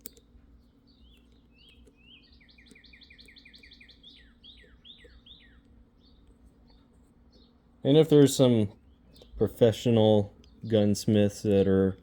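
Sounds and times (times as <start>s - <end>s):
sharp click: 0.0s - 0.3s
songbird singing faintly: 0.0s - 12.0s.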